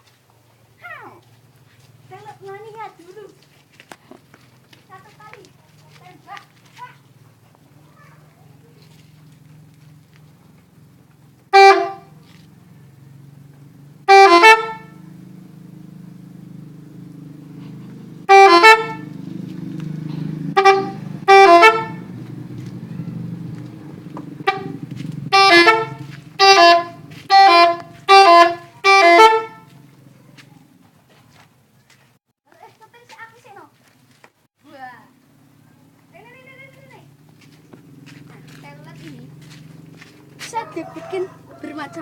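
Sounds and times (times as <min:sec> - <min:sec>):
truck musical horn blasts: 0:11.5 - 0:12.4, 0:14.0 - 0:16.2, 0:17.4 - 0:22.4, 0:24.3 - 0:29.9.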